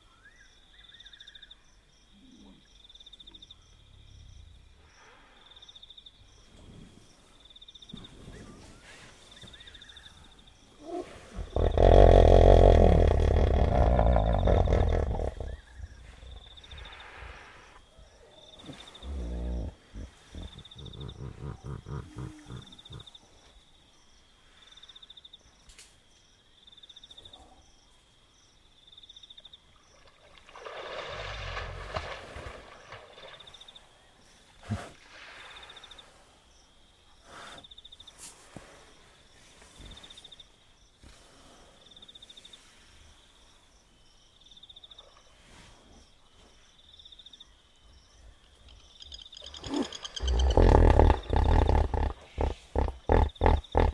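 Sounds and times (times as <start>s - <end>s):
insects chirping in trills: 0.0s - 53.9s
hippopotamus grunting and bellowing: 7.9s - 23.5s, 34.4s - 36.3s, 48.5s - 53.9s.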